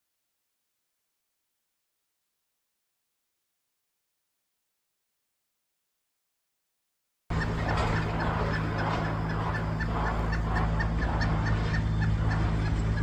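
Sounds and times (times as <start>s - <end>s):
clucking bursts: 7.3s - 13.0s
fowl-like bird calls: 7.3s - 13.0s
steady low hum: 7.3s - 13.0s.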